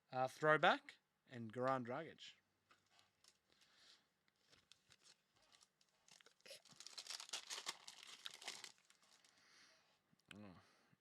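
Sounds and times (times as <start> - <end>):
wrapper tearing and crinkling: 2.8 - 3.6, 4.4 - 9.4.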